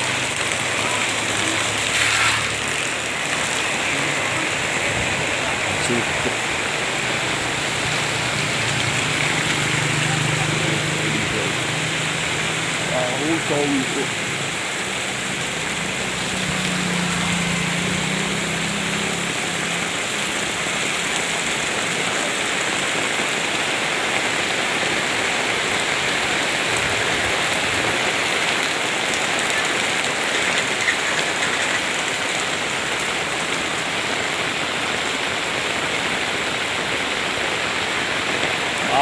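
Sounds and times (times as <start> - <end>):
steady rain falling: 0.0 - 39.0.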